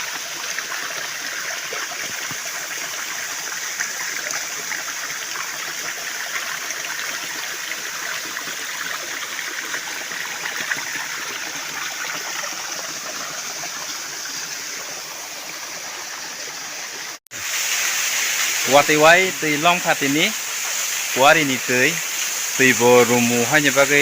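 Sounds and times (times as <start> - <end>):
waterfall rushing: 7.7 - 24.0.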